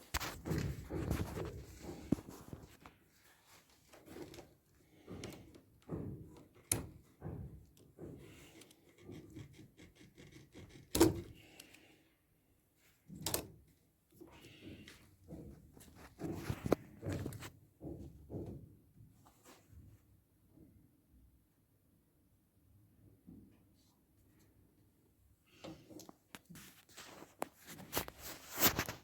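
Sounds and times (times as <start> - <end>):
knocks and clunks of handling: 0.0 - 11.9, 12.9 - 19.7.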